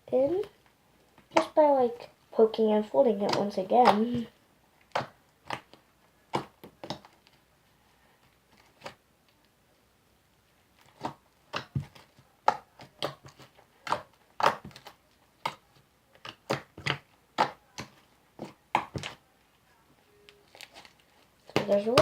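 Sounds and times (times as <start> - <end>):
slime sticky pops and squelches: 10.8 - 15.6.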